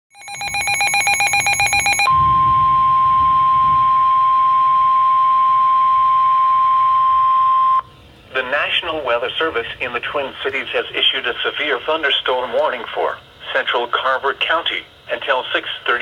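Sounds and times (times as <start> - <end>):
rapid electronic beeping: 0.1 - 7.8
steady alarm tone: 0.1 - 8.9.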